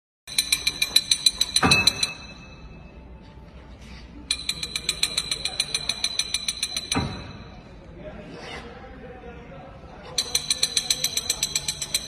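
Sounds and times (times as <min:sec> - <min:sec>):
high-pitched pulsing alarm ringing: 0:00.3 - 0:03.0, 0:04.3 - 0:07.6, 0:10.2 - 0:12.0.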